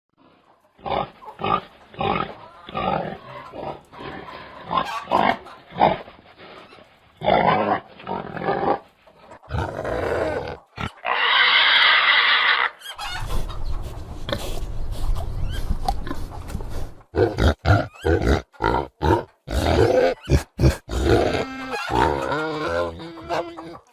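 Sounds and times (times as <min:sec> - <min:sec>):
pigs grunting: 0:00.2 - 0:13.5, 0:15.5 - 0:23.9
pig squealing: 0:00.8 - 0:06.0, 0:09.5 - 0:13.5, 0:17.2 - 0:23.9.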